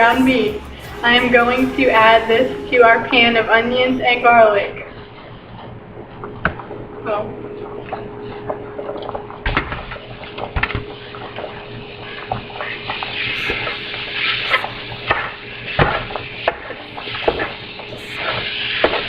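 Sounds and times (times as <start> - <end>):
frying sizzle: 7.9 - 19.0.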